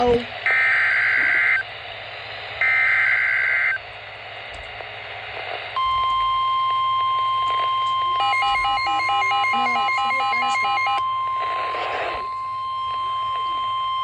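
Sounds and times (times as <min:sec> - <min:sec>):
harsh digital data screech: 0:00.0 - 0:01.7, 0:02.6 - 0:03.8
rapidly alternating beeps: 0:00.4 - 0:01.8, 0:02.6 - 0:03.8, 0:05.8 - 0:14.0
steady warning alert tone: 0:05.8 - 0:14.0.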